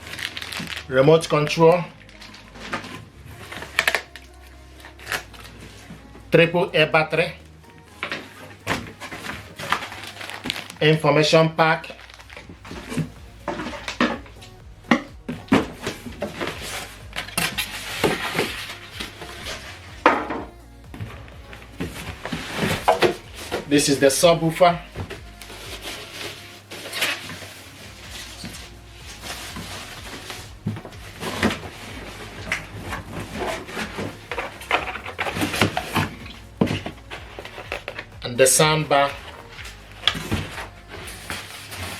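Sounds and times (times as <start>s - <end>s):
low steady hum: 0.0s - 41.9s
package handling clicks and rustles: 8.0s - 10.9s, 11.8s - 12.6s
knocks bumps and scrapes: 8.0s - 41.9s.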